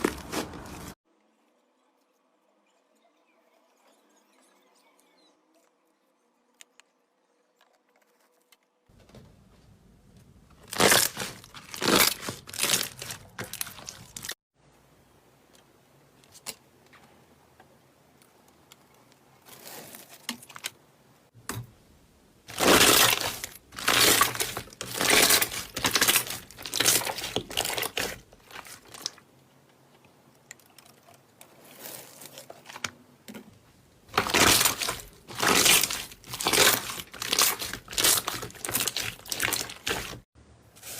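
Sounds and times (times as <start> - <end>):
slime crackling and crunching: 10.6 - 14.4, 22.5 - 29.2, 34.1 - 40.9.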